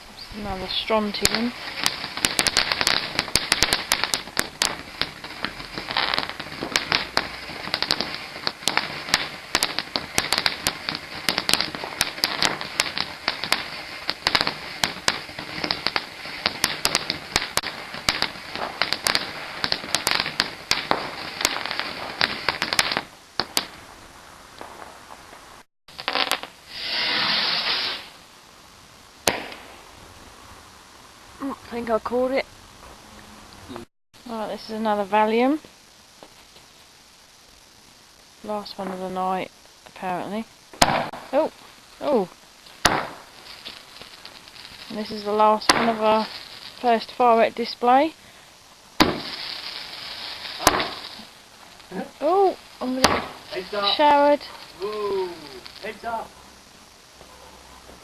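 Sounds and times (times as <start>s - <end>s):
fountain firework hissing and crackling: 0.0s - 58.0s.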